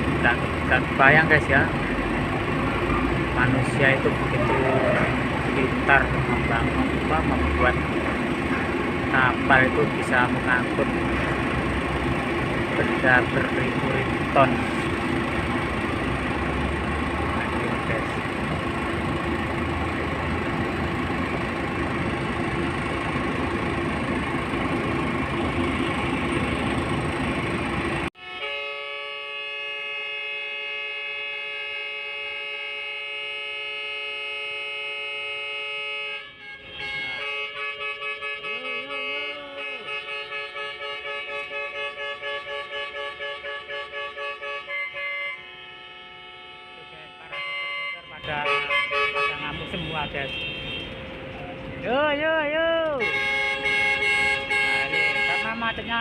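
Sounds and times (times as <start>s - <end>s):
truck horns honking: 0.0s - 56.0s.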